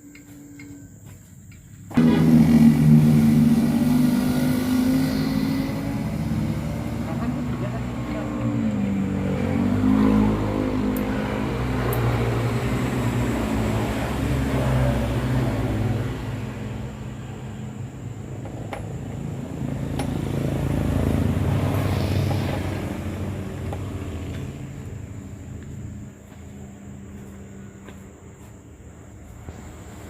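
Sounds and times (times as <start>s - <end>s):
engine running: 0.0s - 30.0s.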